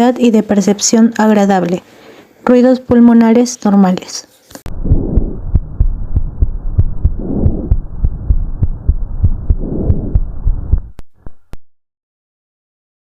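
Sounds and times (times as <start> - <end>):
soft breath noise: 1.8 - 2.4
heartbeat: 4.7 - 11.6.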